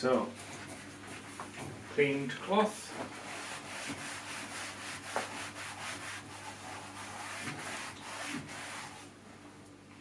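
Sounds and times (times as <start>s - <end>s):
damp cloth rubbing plastic: 3.0s - 9.1s.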